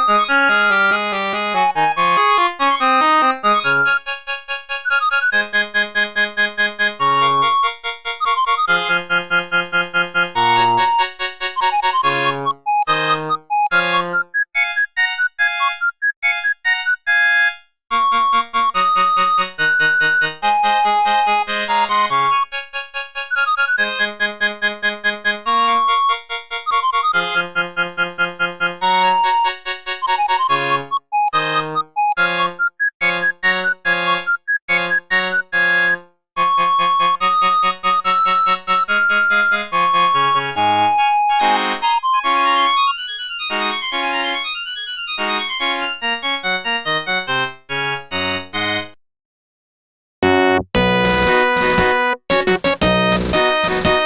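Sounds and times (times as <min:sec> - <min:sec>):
ringtone with bass line: 0:12.7 - 0:17.4, 0:30.1 - 0:43.0, 0:50.2 - 0:54.0
polyphonic ringtone melody: 0:32.0 - 0:36.0, 0:50.2 - 0:54.0.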